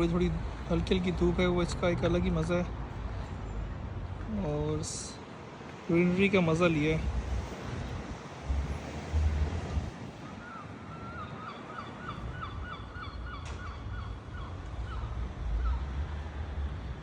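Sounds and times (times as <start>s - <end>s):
wind rumble on microphone: 6.9s - 10.2s.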